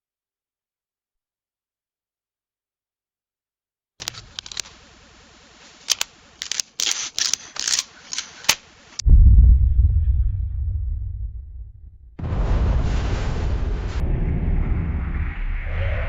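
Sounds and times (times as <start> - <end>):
camera shutter clicks: 4.0 - 4.8, 5.8 - 8.7
faint hiss: 4.1 - 9.0
deep sci-fi space rumble: 9.0 - 16.0.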